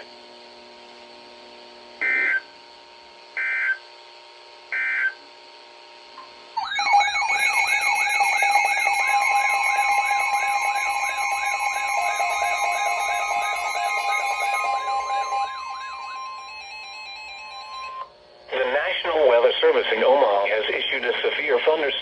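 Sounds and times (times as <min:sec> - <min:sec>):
warbling electronic alarm: 0:02.0 - 0:02.5, 0:03.4 - 0:03.8, 0:06.6 - 0:18.8
short buzzy data chirps: 0:06.6 - 0:18.0.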